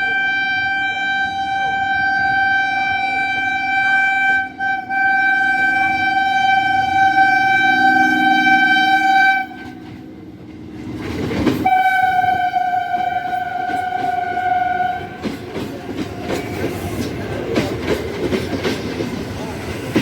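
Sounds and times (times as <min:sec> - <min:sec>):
electric train horn blasts: 0:00.0 - 0:10.4, 0:11.6 - 0:15.6
rush of passing train: 0:00.0 - 0:20.0.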